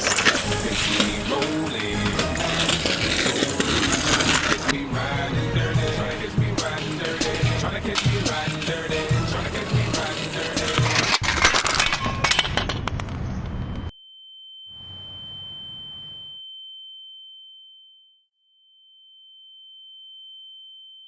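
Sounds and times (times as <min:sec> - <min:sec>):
noisy clicking clatter: 0:00.0 - 0:04.8, 0:05.9 - 0:13.9.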